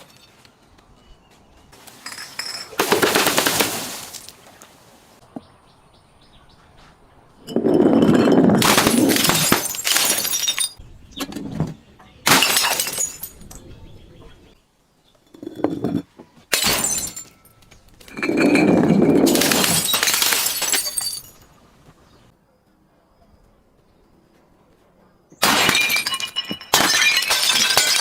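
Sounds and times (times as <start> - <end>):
glass bottles breaking: 2.0 - 4.3, 7.5 - 10.8, 12.2 - 13.6, 16.5 - 21.5, 25.4 - 28.0.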